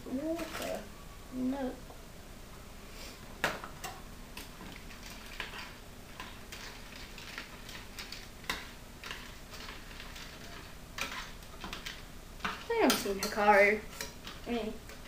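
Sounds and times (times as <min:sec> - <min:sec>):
kitchen utensils clicking and tapping: 0:03.4 - 0:15.0.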